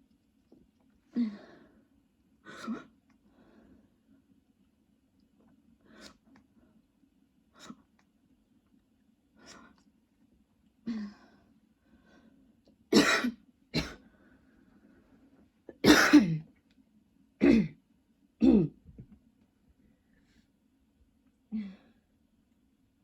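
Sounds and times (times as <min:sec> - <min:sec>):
woman coughing: 0:12.9 - 0:14.0, 0:15.8 - 0:16.4, 0:17.4 - 0:17.8, 0:18.4 - 0:18.8.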